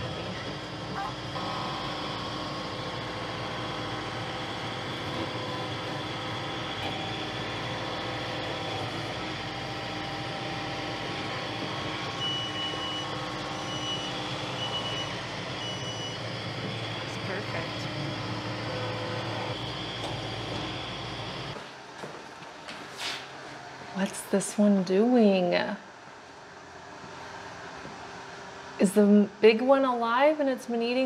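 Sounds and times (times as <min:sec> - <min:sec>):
mechanical drone with tones: 0:00.0 - 0:21.6.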